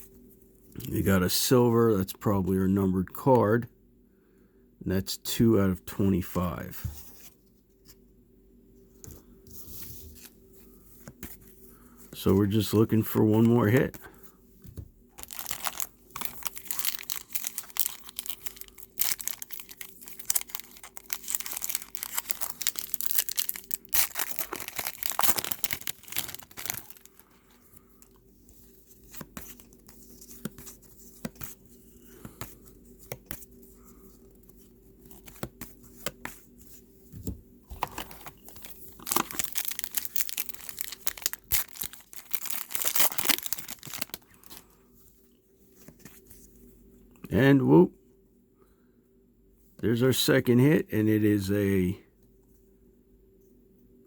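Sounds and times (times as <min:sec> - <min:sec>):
cards shuffled by hand: 0:12.3 - 0:27.2, 0:28.0 - 0:33.6, 0:34.4 - 0:44.6
foil wrappers crinkling and tearing: 0:15.2 - 0:27.4, 0:37.7 - 0:44.8.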